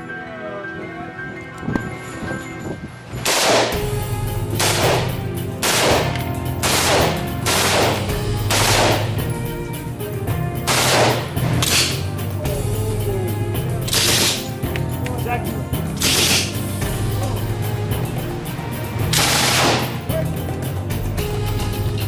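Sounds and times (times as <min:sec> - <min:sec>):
music: 0:00.0 - 0:22.0
gunshots with ringing tail: 0:03.2 - 0:04.0, 0:04.6 - 0:09.3, 0:10.7 - 0:12.0, 0:19.2 - 0:20.1.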